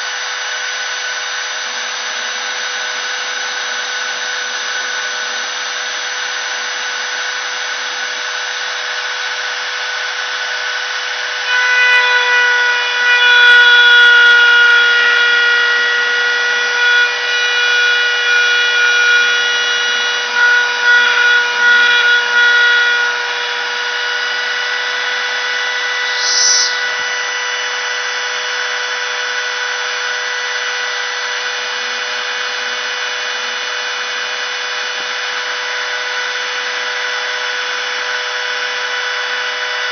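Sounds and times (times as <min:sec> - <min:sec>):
router spindle whining: 0:00.0 - 0:39.8
router bit cutting: 0:07.1 - 0:36.4.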